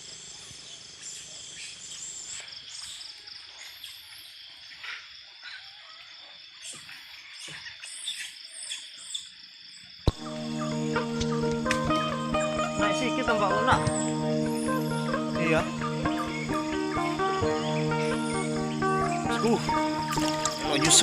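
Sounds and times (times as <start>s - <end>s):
insect chorus trilling: 0.0s - 21.0s
music: 10.1s - 21.0s.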